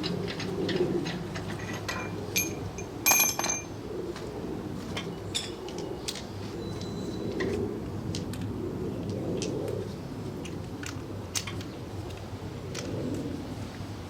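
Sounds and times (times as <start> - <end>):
metal parts and tools clinking: 1.3 - 3.7
ringing metal clink: 1.6 - 3.7.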